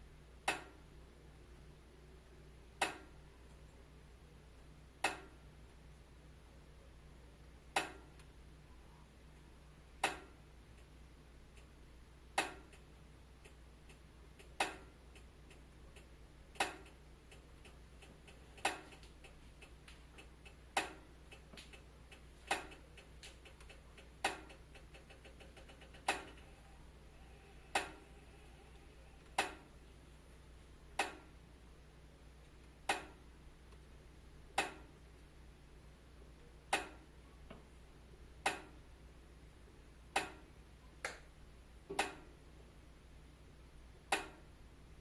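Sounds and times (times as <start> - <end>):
low steady hum: 0.0 - 45.0
wood fire crackling and popping: 14.4 - 26.4.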